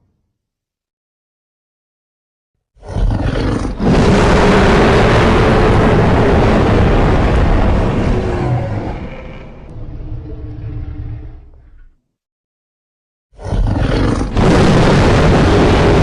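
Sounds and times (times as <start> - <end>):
monster roar: 2.8 - 9.7, 13.4 - 16.0
deep rumble: 3.8 - 11.8.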